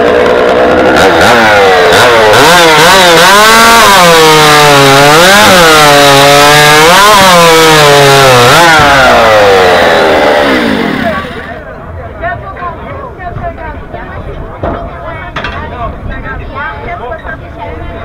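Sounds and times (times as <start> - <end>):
chainsaw cutting a log: 0.0 - 11.6.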